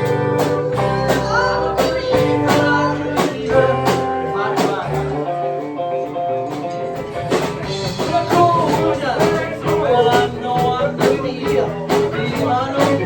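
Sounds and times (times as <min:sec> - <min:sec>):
steady drum beat: 0:00.0 - 0:05.4, 0:06.5 - 0:13.0
electric guitar: 0:00.0 - 0:13.0.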